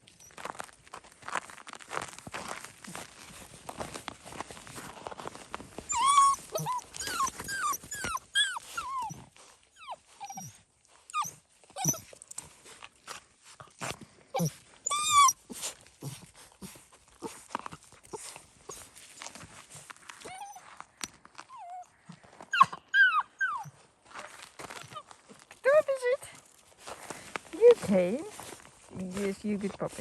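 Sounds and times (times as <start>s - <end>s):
puppies whining and yelping: 5.8s - 12.2s, 14.4s - 15.7s, 20.2s - 23.9s.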